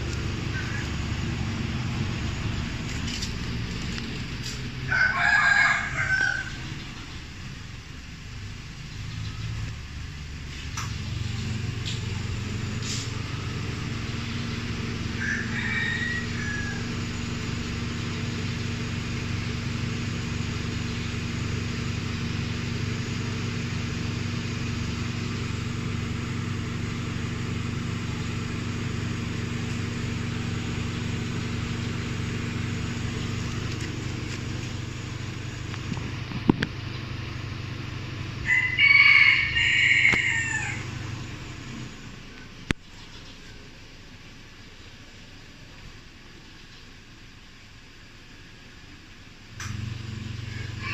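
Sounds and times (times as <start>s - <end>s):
car engine idling: 0.0s - 50.9s
rooster crowing: 4.9s - 6.7s, 15.0s - 17.2s, 38.4s - 41.1s, 50.4s - 50.9s.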